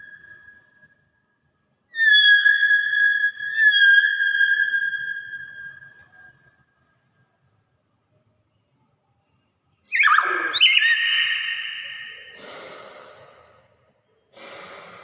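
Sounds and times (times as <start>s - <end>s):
myna whistled notes: 9.9s - 12.4s.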